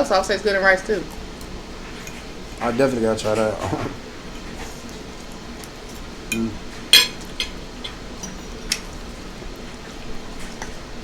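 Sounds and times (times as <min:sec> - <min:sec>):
utensils clinking against dishes: 0:01.8 - 0:05.0, 0:05.6 - 0:09.1.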